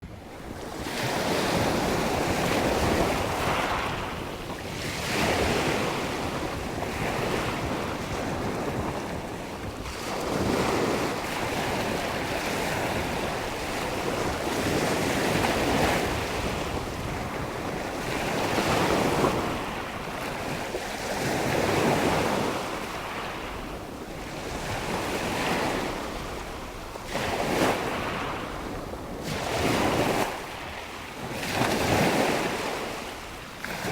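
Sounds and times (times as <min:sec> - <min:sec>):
sea waves breaking on shore: 0:00.1 - 0:33.9
wind buffeting microphone: 0:00.1 - 0:33.9.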